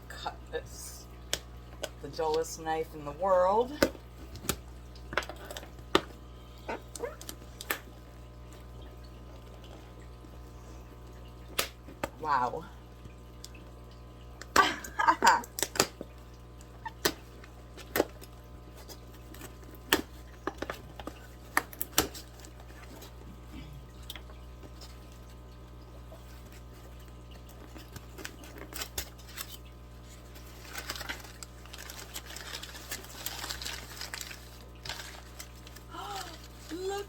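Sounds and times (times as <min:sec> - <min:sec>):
packing material rustling: 0:27.6 - 0:37.0.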